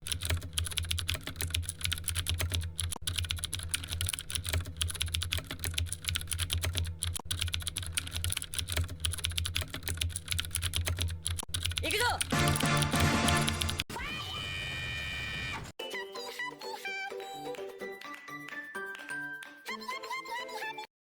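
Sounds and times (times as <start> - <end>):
fast keyboard typing: 0.0 - 13.8.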